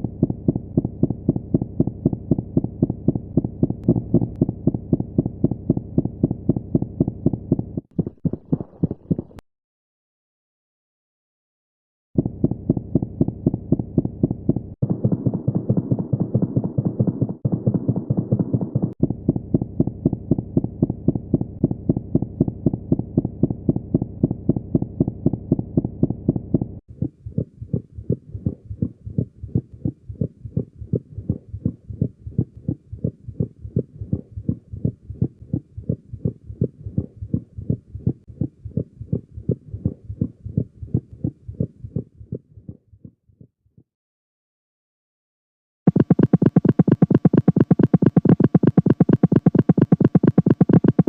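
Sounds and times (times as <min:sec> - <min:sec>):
steady hum: 0:00.0 - 0:07.4, 0:45.9 - 0:51.0
heartbeats: 0:00.0 - 0:09.4, 0:12.2 - 0:43.5, 0:45.9 - 0:51.0.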